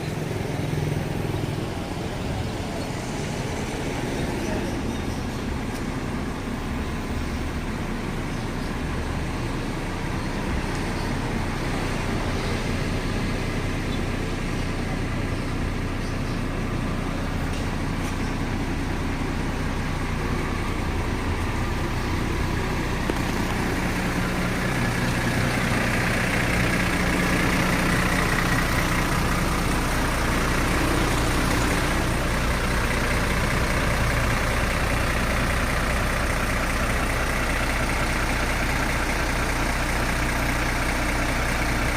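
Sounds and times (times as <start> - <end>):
bus engine running: 0.0 - 41.9
road traffic noise: 0.0 - 41.9.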